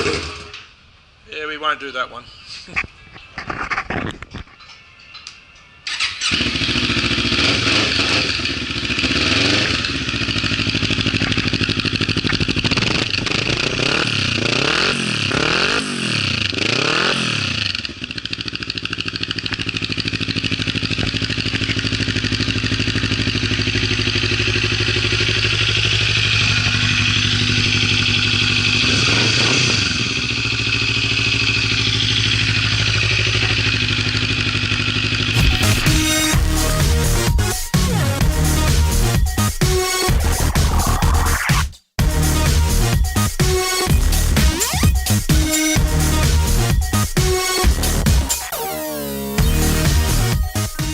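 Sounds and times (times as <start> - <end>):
motorcycle engine idling: 5.6 - 37.4.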